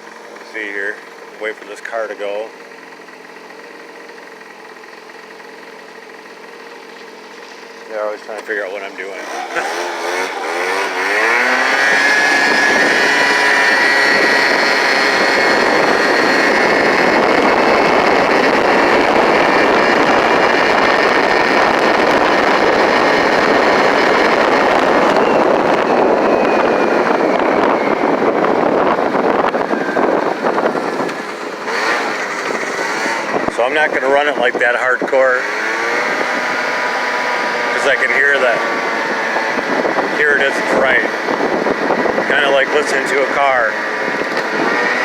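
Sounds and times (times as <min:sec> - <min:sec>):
scooter engine revving: 0:08.9 - 0:45.0
wind on microphone: 0:09.2 - 0:45.0.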